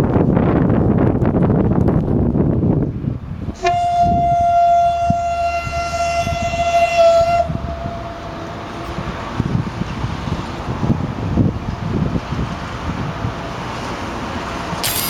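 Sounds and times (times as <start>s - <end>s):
locomotive horn blast: 3.6s - 8.8s.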